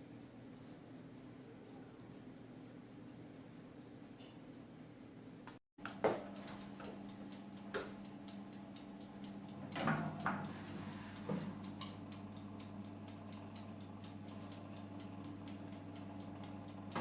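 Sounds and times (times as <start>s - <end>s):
steady low hum: 6.2s - 17.0s.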